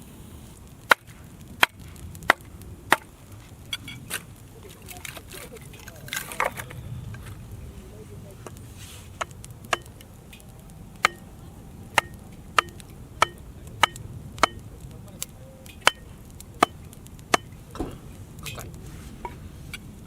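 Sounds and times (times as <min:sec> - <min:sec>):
sharp chopping strikes metallic ring: 0:11.0 - 0:11.3.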